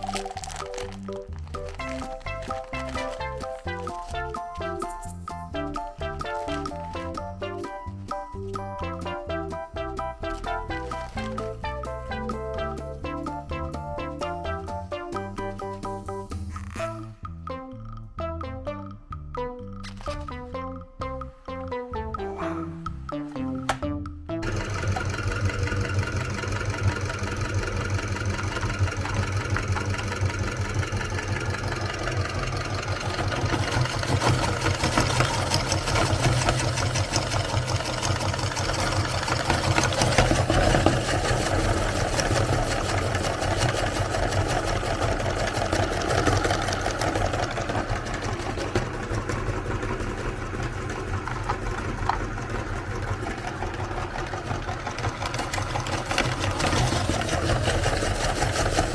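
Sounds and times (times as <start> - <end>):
cookies crackling and crunching: 0.0 - 5.2
meat grinder motor humming: 0.0 - 8.2, 24.4 - 58.9.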